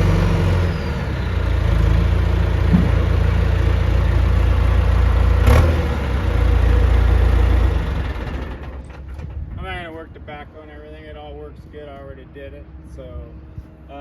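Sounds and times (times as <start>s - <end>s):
diesel engine revving hard: 0.0s - 8.6s.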